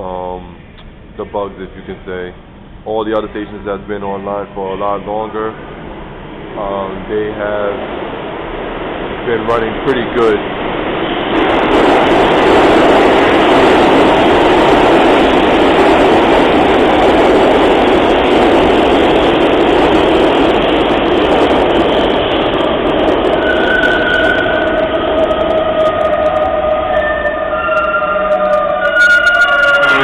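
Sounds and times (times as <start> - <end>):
high whining tones: 0.5 - 30.0
train wheels on rail: 0.7 - 30.0.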